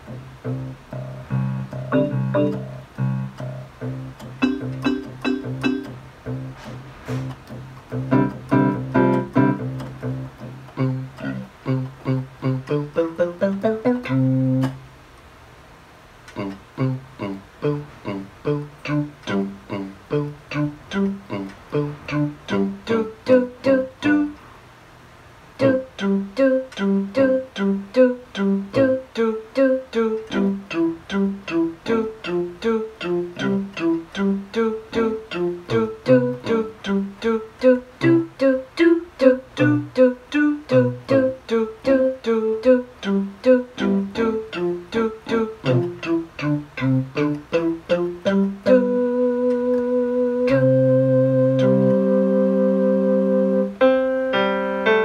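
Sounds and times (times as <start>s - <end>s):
keyboard held tone: 0.0s - 7.3s, 16.4s - 24.4s, 25.6s - 41.6s, 42.4s - 55.0s
keyboard guitar-like broken chords: 0.0s - 14.8s, 16.3s - 24.4s, 25.6s - 55.0s.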